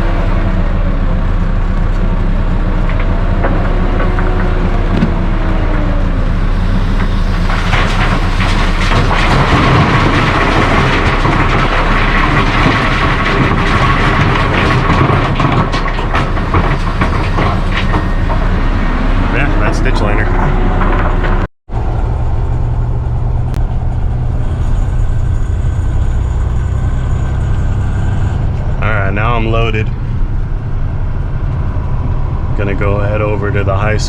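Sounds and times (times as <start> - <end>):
diesel engines running: 0.0 - 34.0
rock clattering on steel: 6.6 - 18.4.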